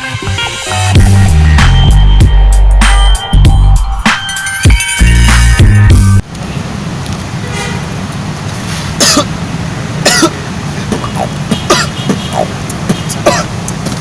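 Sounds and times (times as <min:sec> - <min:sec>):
person coughing hard: 0:09.0 - 0:09.3, 0:10.0 - 0:13.6.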